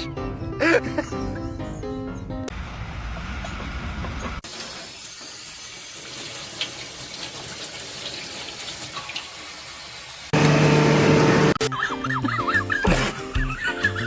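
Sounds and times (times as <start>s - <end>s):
loud sound with low tone: 10.4s - 11.6s.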